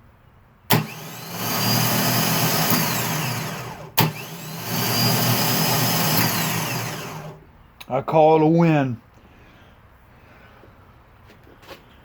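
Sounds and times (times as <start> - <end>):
starter solenoid click: 0.7 - 7.4
starter motor whine: 0.7 - 7.5.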